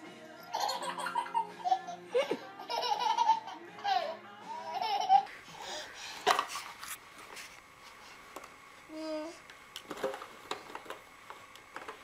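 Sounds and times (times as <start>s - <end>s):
baby giggling: 0.5s - 5.3s.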